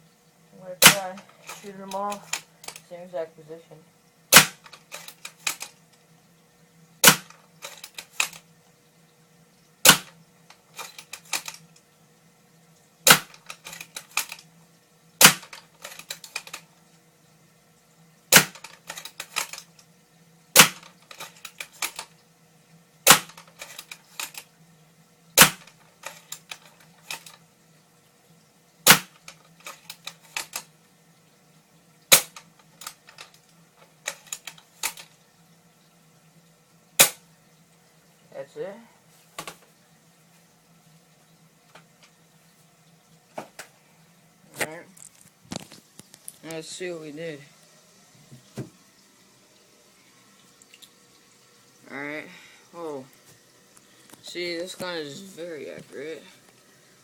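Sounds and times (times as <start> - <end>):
airsoft rifle shots: 4.3 - 4.6, 7.0 - 7.3, 20.6 - 20.8.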